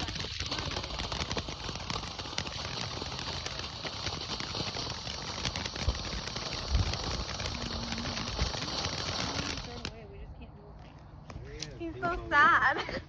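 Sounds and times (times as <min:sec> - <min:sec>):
fireworks crackling: 0:00.0 - 0:10.4.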